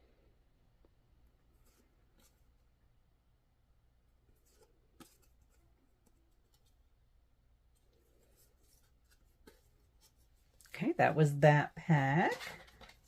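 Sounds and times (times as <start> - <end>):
trading cards rustling: 11.8 - 13.0.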